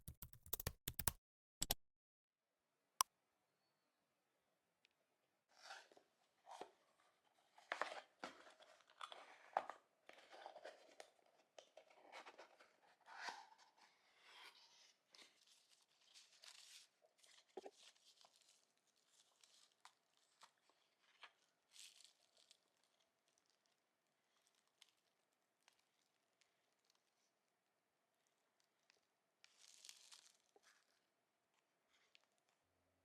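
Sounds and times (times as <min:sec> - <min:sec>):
rustling and crinkling: 0:05.5 - 0:27.3, 0:28.6 - 0:32.6.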